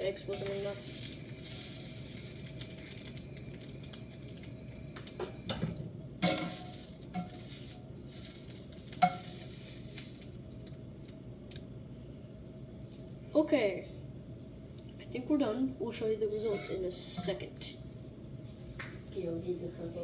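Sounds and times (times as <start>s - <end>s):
eggs sizzling in a frying pan: 0.0s - 5.2s, 6.2s - 10.8s
utensil scraping and clinking pan: 6.2s - 7.8s, 9.0s - 9.5s.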